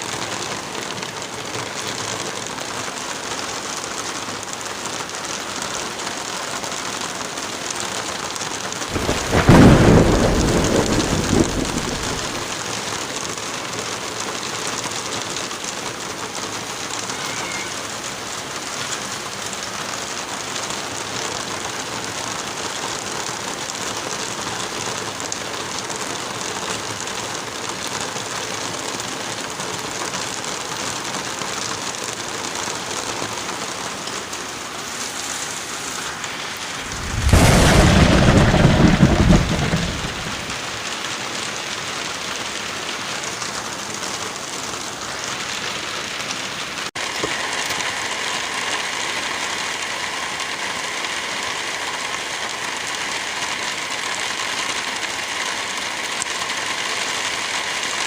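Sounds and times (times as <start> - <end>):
steady rain: 0.0 - 58.0
thunderclap: 8.9 - 12.5, 36.6 - 40.9.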